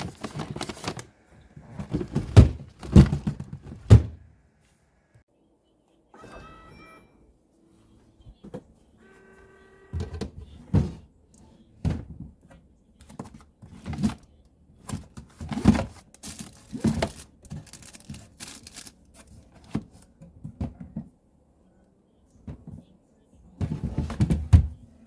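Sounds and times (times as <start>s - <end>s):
cardboard thumps and rustles: 0.0s - 1.1s, 1.7s - 4.2s, 14.9s - 18.9s, 23.6s - 24.8s.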